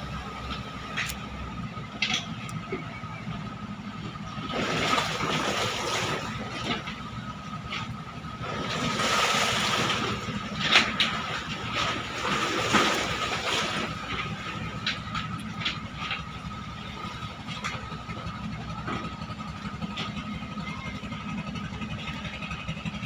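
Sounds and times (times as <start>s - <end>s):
boat engine running: 0.0s - 23.0s
water rushing past: 8.7s - 10.4s.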